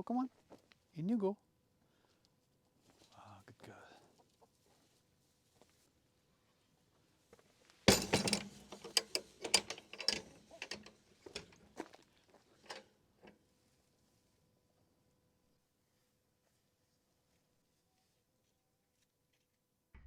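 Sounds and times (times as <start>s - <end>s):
coop door latch clattering: 7.9s - 11.6s.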